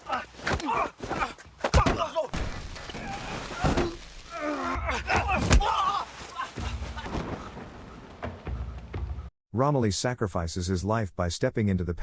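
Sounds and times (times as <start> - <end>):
man shouting and crying out: 4.4 - 6.7.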